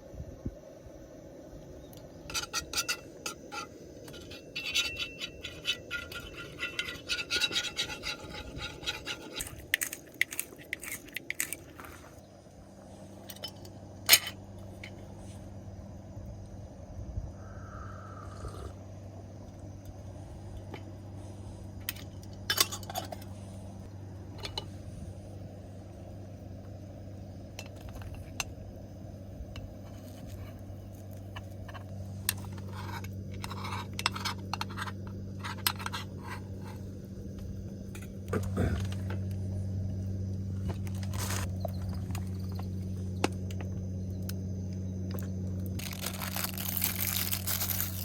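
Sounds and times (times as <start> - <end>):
steady low hum: 0.0 - 48.0
small hard items clinking: 8.3 - 12.2, 45.6 - 48.0.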